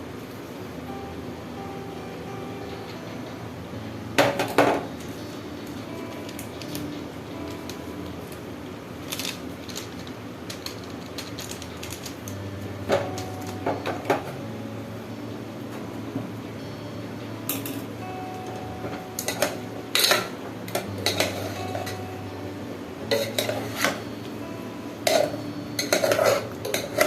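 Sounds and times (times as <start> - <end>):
steady low hum: 0.0 - 27.0
metal utensils clinking on pot: 19.2 - 22.0, 23.1 - 24.0, 25.1 - 27.0.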